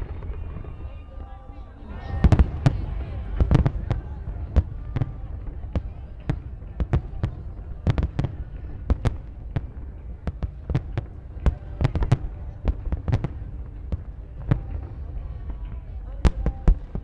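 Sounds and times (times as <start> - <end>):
fireworks bursting: 0.0 - 17.0
low rumble: 0.0 - 17.0.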